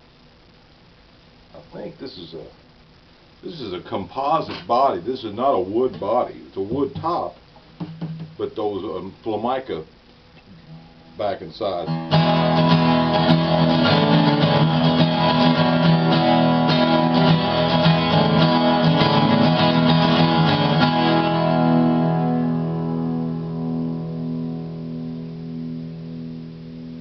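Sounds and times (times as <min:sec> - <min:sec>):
twelve-string guitar strumming: 0:04.4 - 0:08.9, 0:10.5 - 0:27.0.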